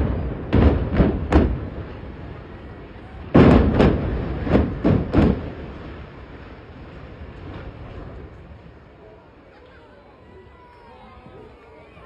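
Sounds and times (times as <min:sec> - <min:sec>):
loud echoing explosion bangs: 0:00.0 - 0:08.4.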